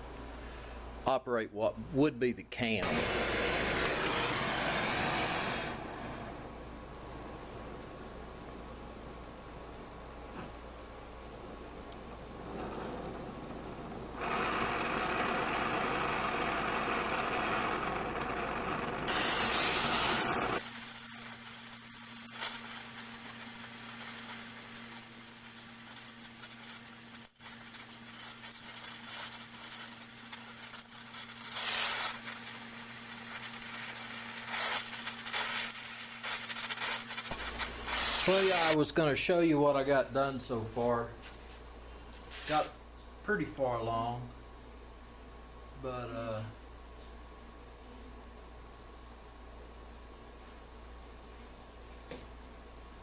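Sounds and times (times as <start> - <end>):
power tool running: 2.8 - 6.2, 14.2 - 38.8
quiet steady hum: 5.4 - 53.0.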